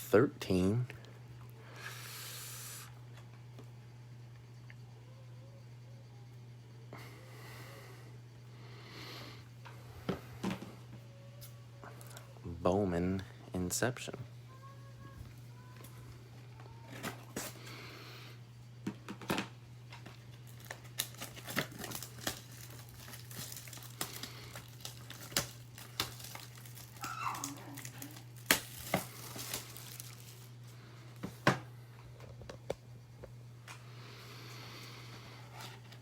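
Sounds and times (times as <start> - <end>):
packaging crinkling and tearing: 20.0 - 30.6.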